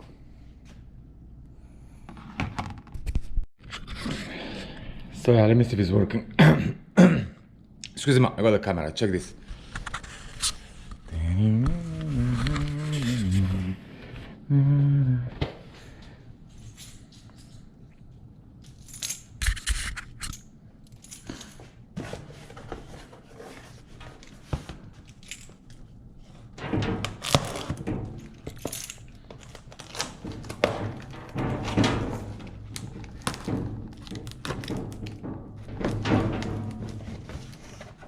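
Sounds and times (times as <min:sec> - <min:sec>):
parcel packaging being opened: 0:28.6 - 0:31.2.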